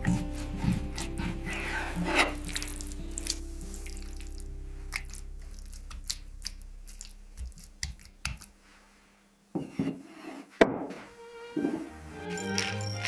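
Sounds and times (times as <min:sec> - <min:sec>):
music: 0:00.0 - 0:07.6, 0:11.0 - 0:13.0.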